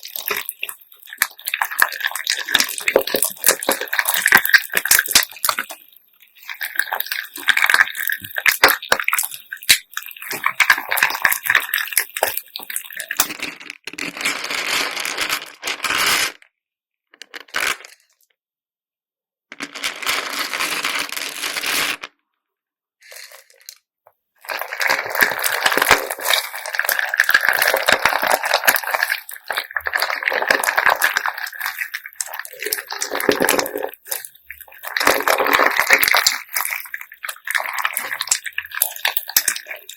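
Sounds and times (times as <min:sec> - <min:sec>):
wet slime squelches: 0:00.0 - 0:15.5, 0:24.4 - 0:39.9.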